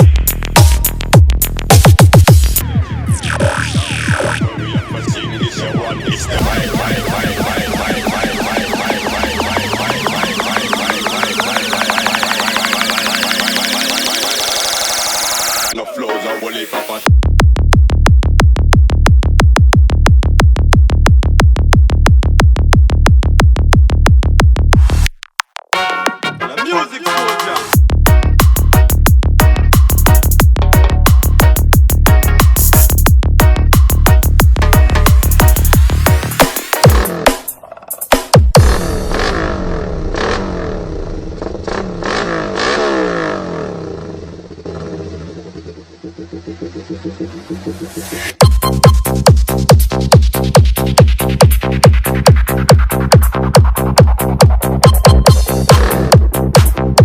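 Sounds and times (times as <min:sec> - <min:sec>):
deep synthesized kick-drum hits: 0:00.0 - 0:15.8, 0:17.1 - 0:25.1, 0:27.8 - 0:37.4, 0:38.1 - 0:42.4, 0:47.6 - 0:57.0
bass-heavy dance track: 0:00.0 - 0:25.1, 0:26.4 - 0:42.2, 0:45.2 - 0:57.0
sharp hits: 0:02.4 - 0:15.8.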